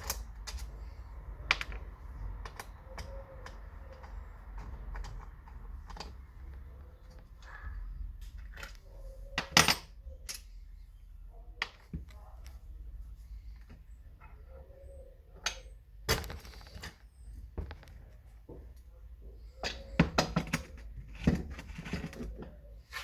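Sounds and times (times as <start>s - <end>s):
metallic clicks of small parts: 0.0s - 6.2s.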